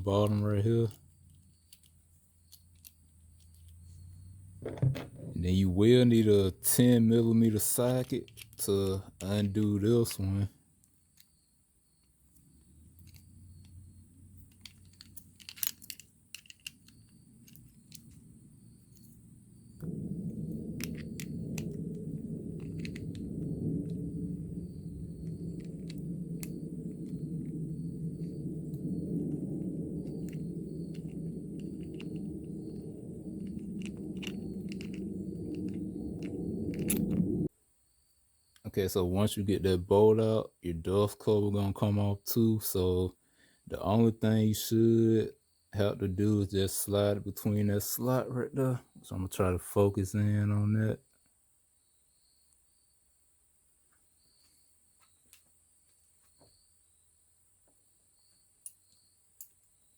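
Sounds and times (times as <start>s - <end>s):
low background hum: 0.0s - 37.5s
faint small clicks: 12.0s - 13.8s, 14.4s - 18.3s, 25.2s - 27.6s, 28.2s - 37.4s, 53.9s - 56.5s, 58.6s - 59.8s.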